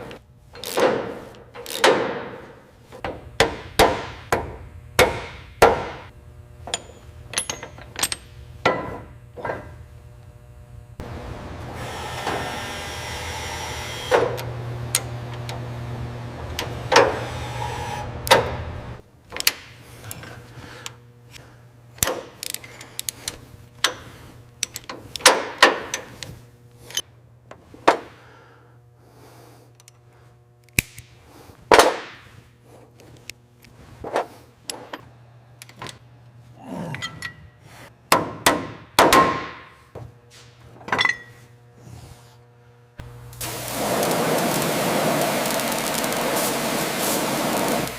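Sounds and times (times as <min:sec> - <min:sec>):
low hum: 0:06.2 - 0:19.1.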